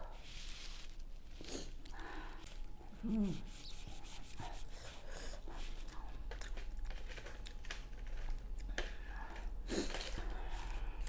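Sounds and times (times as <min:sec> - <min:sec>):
chewing seafood: 0:01.0 - 0:11.0
small clicks and crackles: 0:05.6 - 0:11.0.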